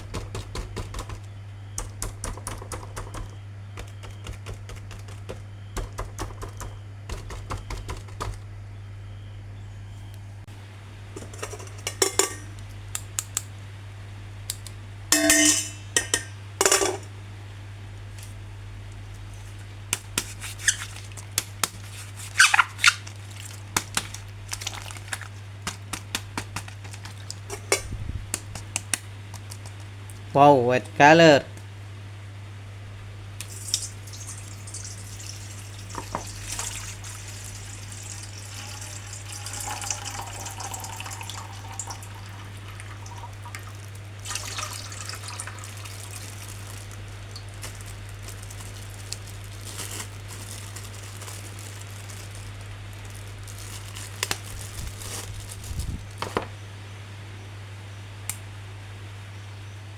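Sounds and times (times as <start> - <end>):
plastic squeaks: 20.2 - 25.9.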